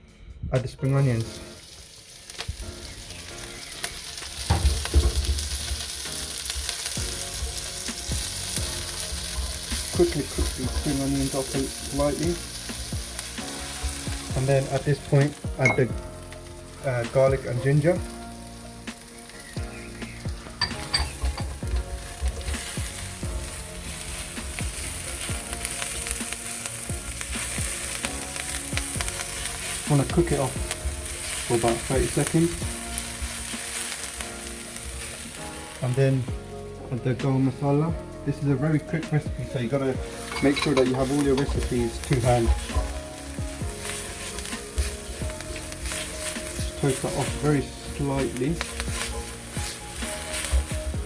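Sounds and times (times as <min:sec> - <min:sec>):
onions sizzling in oil: 0:00.9 - 0:51.0
utensil knocking against pan: 0:04.5 - 0:05.7, 0:15.6 - 0:16.0, 0:20.6 - 0:21.6, 0:40.3 - 0:42.3.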